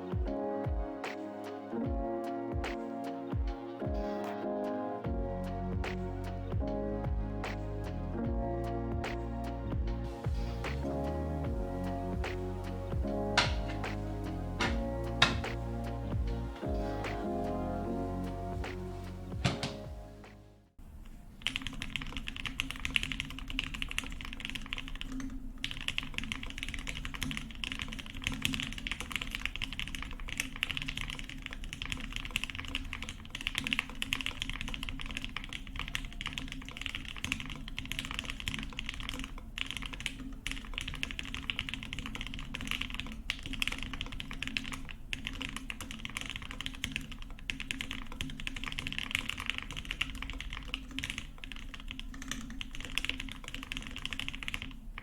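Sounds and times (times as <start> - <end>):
fast typing on mechanical keyboard: 21.4 - 55.0.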